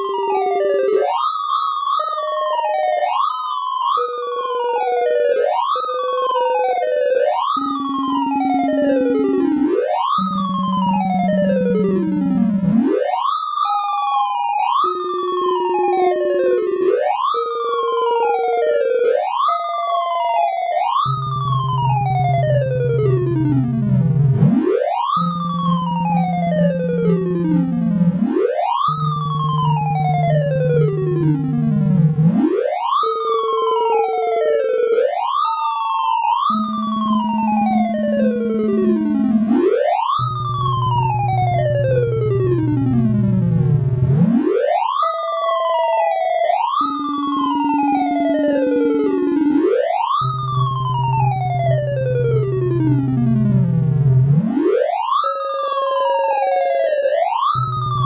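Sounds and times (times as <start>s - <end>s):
held low synth tone: 7.6s - 12.8s, 21.1s - 24.6s, 28.9s - 32.4s, 36.5s - 44.5s, 46.8s - 54.6s
synthesized beeping tones: 7.6s - 12.8s, 36.5s - 44.5s
synthesized beeps sweeping in pitch: 7.6s - 12.8s, 20.9s - 32.6s, 36.4s - 45.1s, 46.7s - 54.8s.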